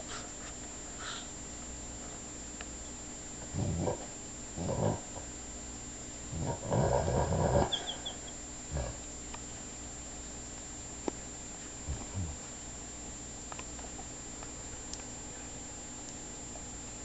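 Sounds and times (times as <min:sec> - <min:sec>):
dog snoring: 0:03.4 - 0:05.3, 0:06.3 - 0:08.1, 0:08.7 - 0:09.1, 0:11.8 - 0:12.4.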